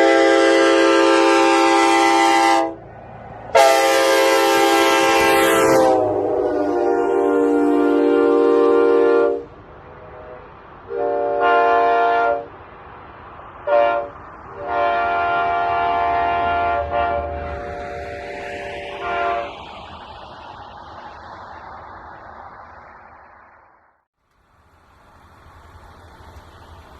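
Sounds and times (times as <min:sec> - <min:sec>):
train horn blasts: 0:00.0 - 0:02.8, 0:03.5 - 0:12.6, 0:13.6 - 0:19.6.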